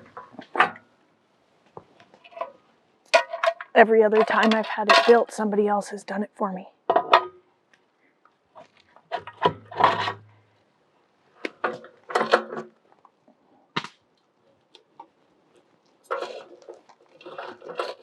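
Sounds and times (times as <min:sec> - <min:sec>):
wheelchair parts clunking and rattling: 0:00.0 - 0:00.9, 0:01.7 - 0:05.3, 0:06.9 - 0:07.4, 0:08.6 - 0:10.5, 0:11.4 - 0:13.0, 0:16.1 - 0:18.0.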